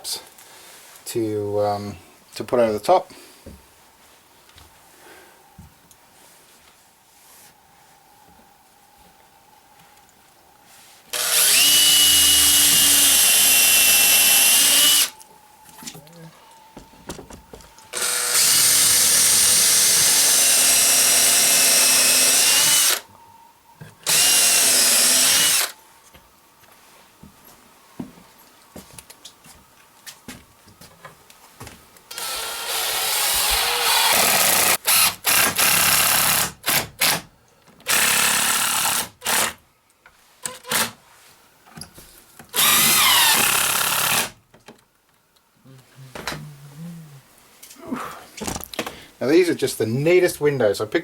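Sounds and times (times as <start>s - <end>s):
power drill driving screws: 11.1s - 15.2s, 17.9s - 23.0s, 24.0s - 25.8s, 32.1s - 37.2s, 37.8s - 39.6s, 40.5s - 41.0s, 42.5s - 44.4s.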